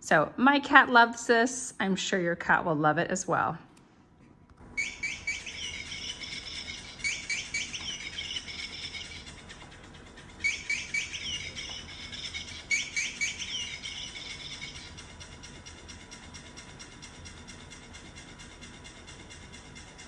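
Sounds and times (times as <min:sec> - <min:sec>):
electronic toy chirping: 0:04.8 - 0:17.0.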